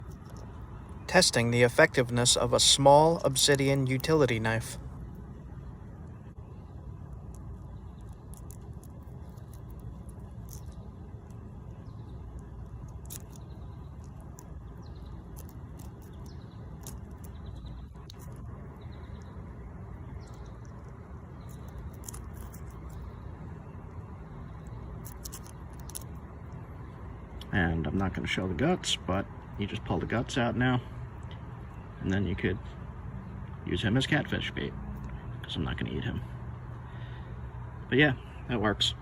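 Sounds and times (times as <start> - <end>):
low outdoor rumble: 0.0 - 39.0
blade clicking and scraping: 8.0 - 11.5, 12.6 - 18.5, 21.4 - 23.1.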